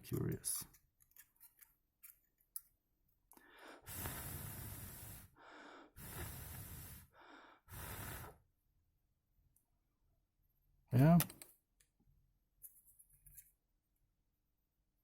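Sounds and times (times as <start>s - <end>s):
person breathing out hard: 3.4s - 8.4s.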